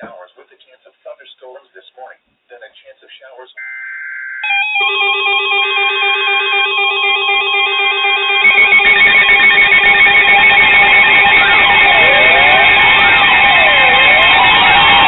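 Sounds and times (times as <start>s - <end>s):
siren-like sweeps: 3.6s - 15.0s
warbling alarm beeps: 3.6s - 15.0s.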